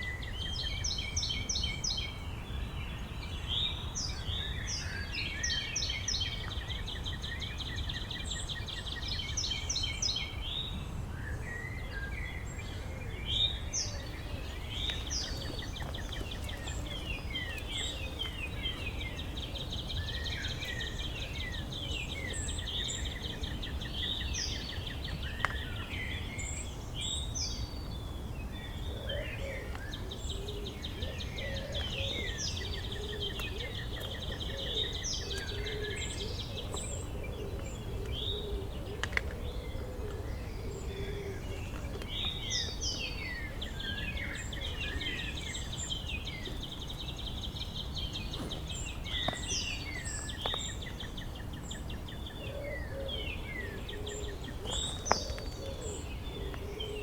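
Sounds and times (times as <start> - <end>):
birds chirping and trilling: 11.4 - 57.0.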